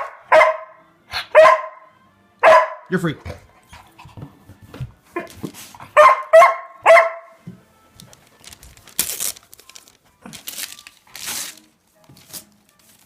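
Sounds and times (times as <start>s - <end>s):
dog barking high-pitched: 0.0s - 2.9s, 5.9s - 7.4s
paper rustling: 8.0s - 13.0s.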